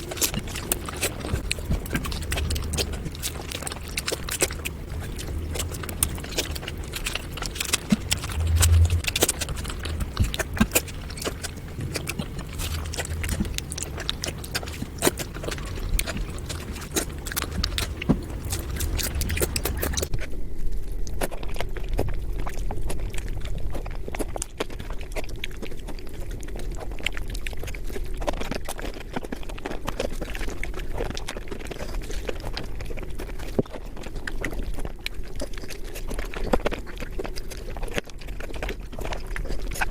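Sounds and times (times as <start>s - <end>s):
low hum: 0.0s - 20.1s
eating and chewing sounds: 0.0s - 20.3s, 20.9s - 39.9s.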